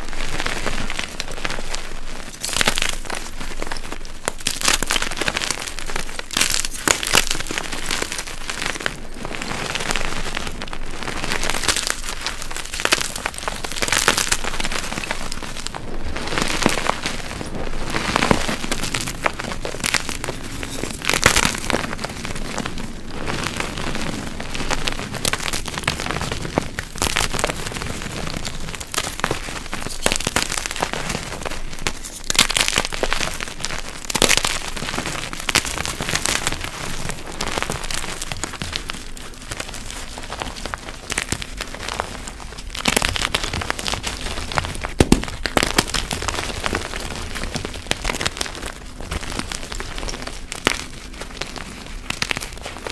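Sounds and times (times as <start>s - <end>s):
chalk crunching and crackling: 0.0s - 52.9s.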